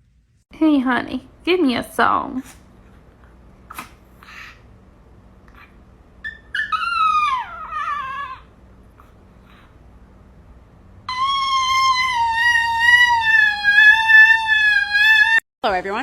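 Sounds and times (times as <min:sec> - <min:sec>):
dog howling: 0:06.2 - 0:08.5, 0:11.1 - 0:15.4.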